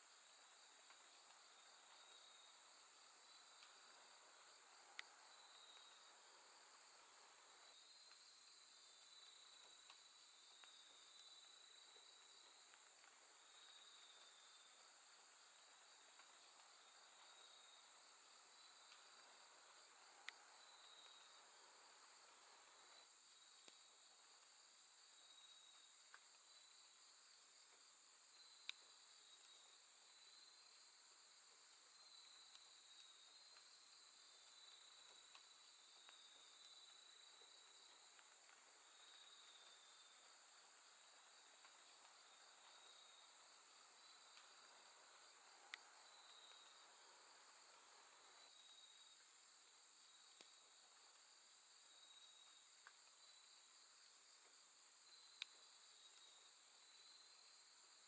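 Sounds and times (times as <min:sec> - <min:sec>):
crickets trilling: 0:31.5 - 0:58.0.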